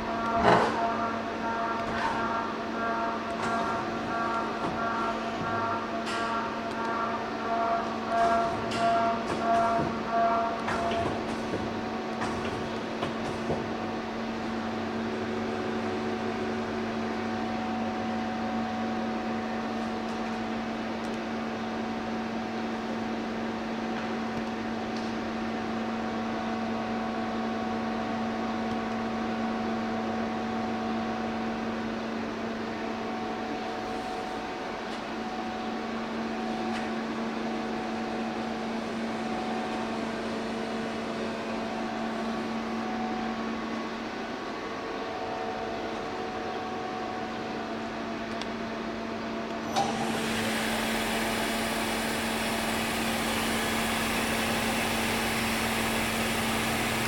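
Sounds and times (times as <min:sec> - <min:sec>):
lathe machine humming: 0:32.2 - 0:46.3, 0:49.6 - 0:57.0.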